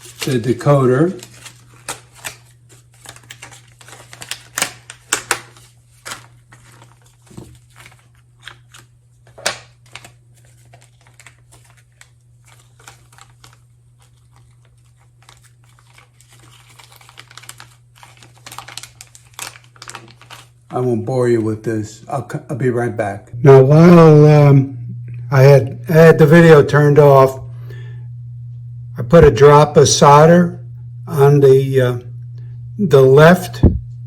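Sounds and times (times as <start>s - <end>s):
plastic packaging clicking and crinkling: 0.0s - 20.8s
steady low hum: 0.0s - 34.0s.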